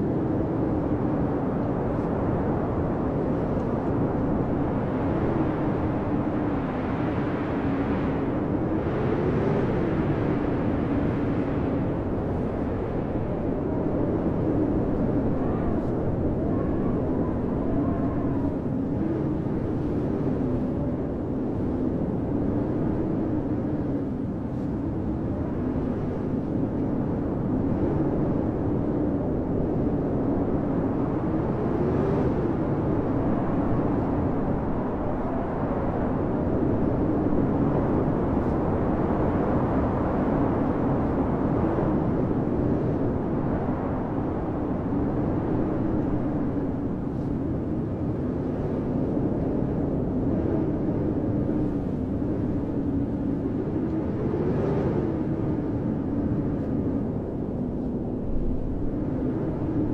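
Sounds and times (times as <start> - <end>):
blizzard wind rushing and moaning: 0.0 - 59.9.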